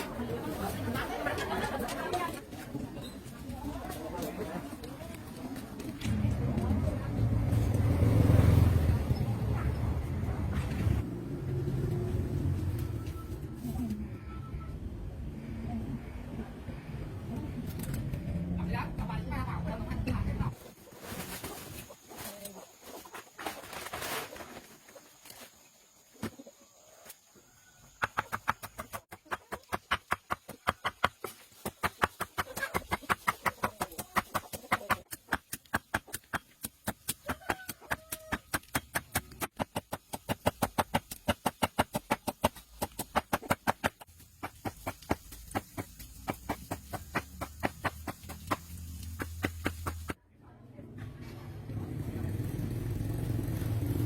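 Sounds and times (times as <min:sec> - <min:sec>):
chickens clucking: 0:20.6 - 0:38.8.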